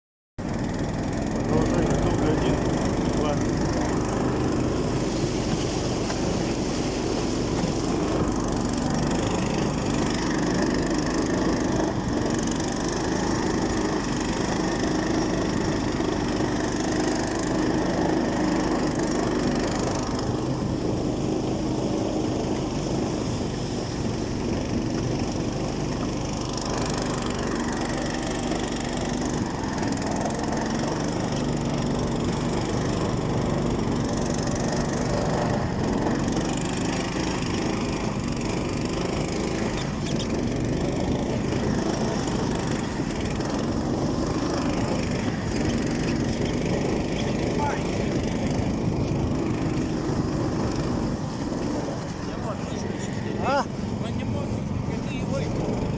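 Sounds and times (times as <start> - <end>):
motor running steadily: 0.4 - 55.9.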